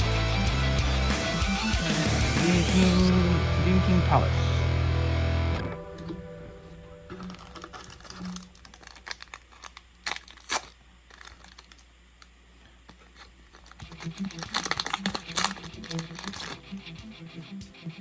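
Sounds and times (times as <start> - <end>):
foil wrapper crinkling: 7.0 - 16.6
foil wrapper ripping: 7.1 - 12.2, 13.0 - 16.6.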